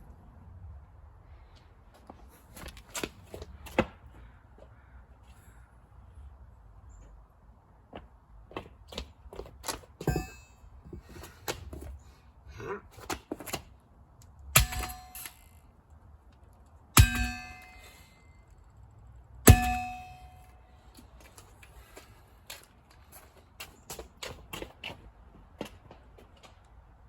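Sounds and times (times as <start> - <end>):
metal hook clanging on alarm: 10.0 - 10.6, 14.6 - 15.6, 17.0 - 18.2, 19.5 - 20.6.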